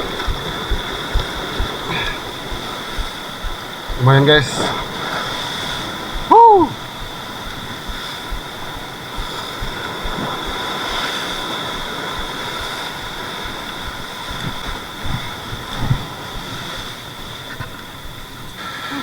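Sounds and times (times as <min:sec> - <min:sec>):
sea surf breaking on rocks: 0:00.0 - 0:19.0
person shouting woo: 0:06.3 - 0:06.8.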